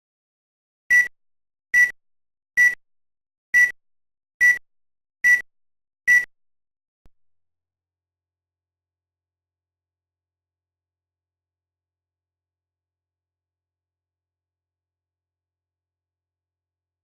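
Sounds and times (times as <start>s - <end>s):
short electronic beeps: 0.9s - 1.1s, 2.6s - 2.8s, 3.6s - 3.8s, 5.2s - 5.4s, 6.1s - 6.3s.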